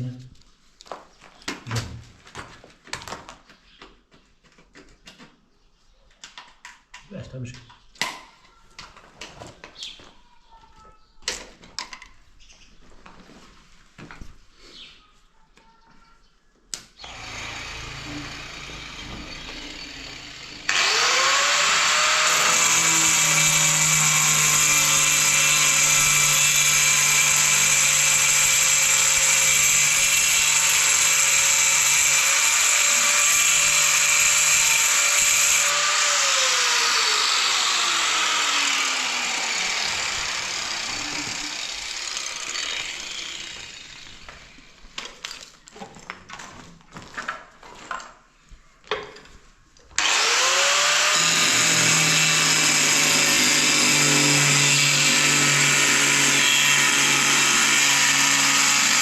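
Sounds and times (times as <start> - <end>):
power tool motor whining: 17.0 - 44.7, 50.0 - 59.0.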